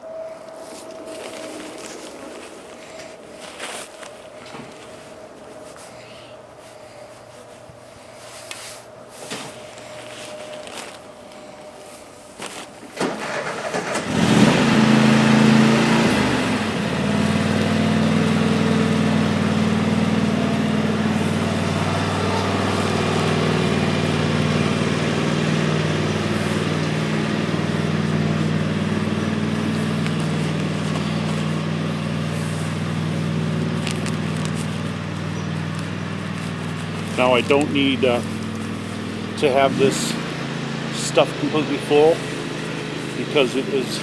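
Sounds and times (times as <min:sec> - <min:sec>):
engine starting and idling: 0:13.0 - 0:35.1.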